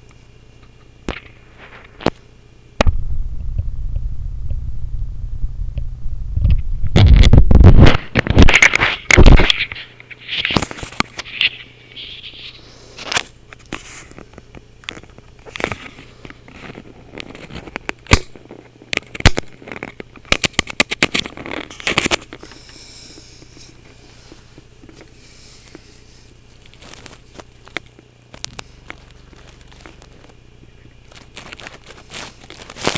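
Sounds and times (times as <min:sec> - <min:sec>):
sharp clicks and crackles: 0:00.0 - 0:11.7, 0:13.0 - 0:22.8, 0:26.5 - 0:32.9
low electrical hum: 0:00.0 - 0:32.9
loud distorted noise bursts: 0:02.8 - 0:09.8.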